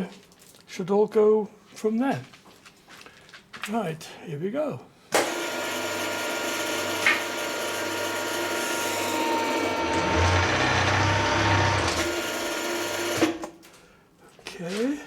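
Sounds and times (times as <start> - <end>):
milling machine running: 5.2 - 13.4.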